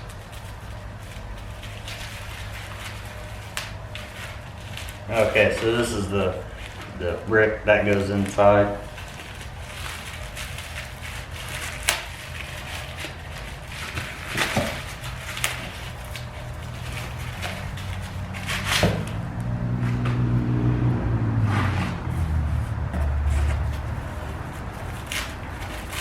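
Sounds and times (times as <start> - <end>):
low engine hum: 0.0 - 26.0
sharp knocks and rustles: 8.8 - 26.0.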